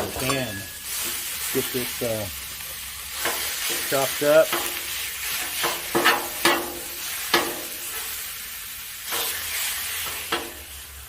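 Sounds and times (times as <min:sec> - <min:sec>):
spatula clanking on steel: 0:00.0 - 0:01.3, 0:03.2 - 0:04.8, 0:05.4 - 0:08.0, 0:10.0 - 0:10.7
meat sizzling on a griddle: 0:00.0 - 0:11.0
metal spatula scraping: 0:03.1 - 0:08.2, 0:09.1 - 0:10.6.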